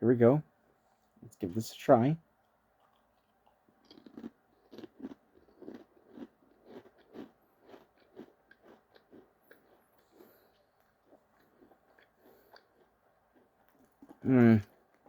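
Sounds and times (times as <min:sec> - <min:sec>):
person chewing crisp: 0:02.8 - 0:15.0.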